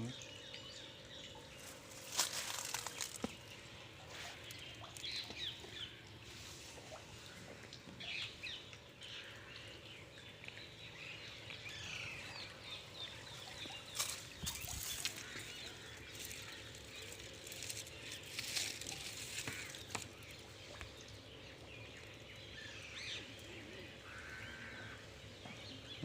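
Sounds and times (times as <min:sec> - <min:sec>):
birds chirping: 0:00.0 - 0:26.0
rustling: 0:01.6 - 0:03.4.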